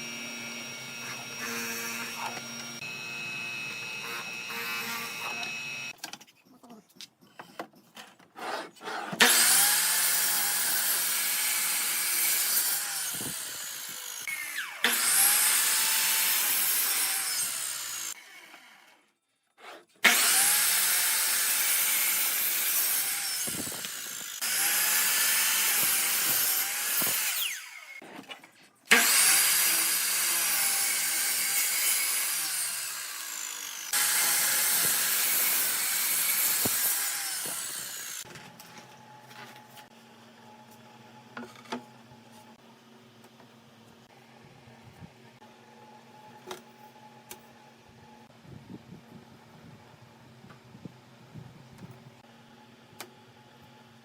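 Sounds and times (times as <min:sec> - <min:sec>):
power tool cutting wood: 0:00.0 - 0:06.0, 0:08.4 - 0:19.0, 0:20.0 - 0:28.0, 0:28.9 - 0:38.3.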